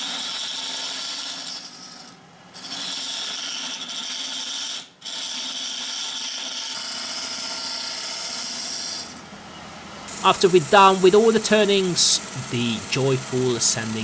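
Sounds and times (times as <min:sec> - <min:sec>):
wood lathe turning: 0:00.2 - 0:02.0, 0:02.6 - 0:06.3, 0:10.1 - 0:14.0.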